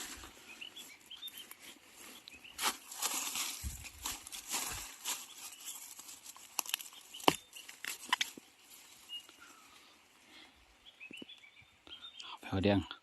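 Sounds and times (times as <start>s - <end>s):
rustling dry leaves: 0.0s - 9.9s.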